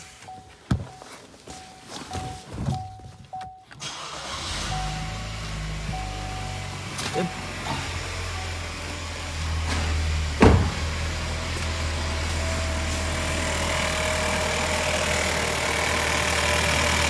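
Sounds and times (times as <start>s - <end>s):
car engine starting and idling: 3.7s - 17.0s.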